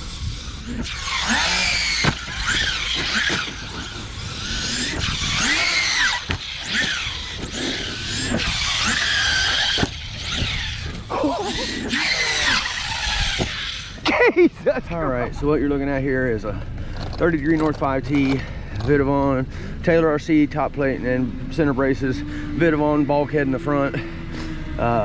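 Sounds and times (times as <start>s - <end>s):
electric motor whining: 0.0s - 14.4s, 20.0s - 25.0s.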